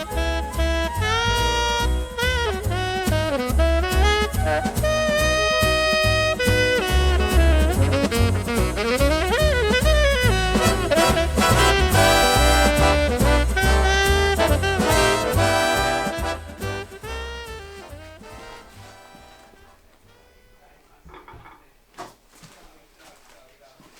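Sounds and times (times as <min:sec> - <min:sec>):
pulsing bass: 0:00.0 - 0:19.0
instrumental jazz with horn lead: 0:00.0 - 0:20.6.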